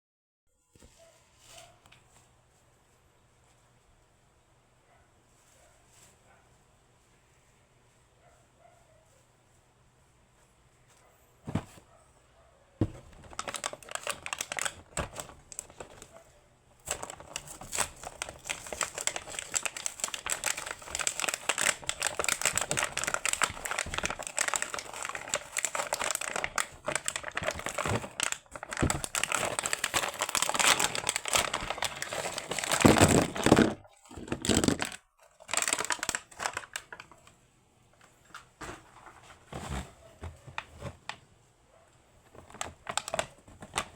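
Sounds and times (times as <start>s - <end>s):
packaging crinkling and tearing: 12.8s - 16.2s, 16.8s - 37.3s, 42.3s - 43.9s.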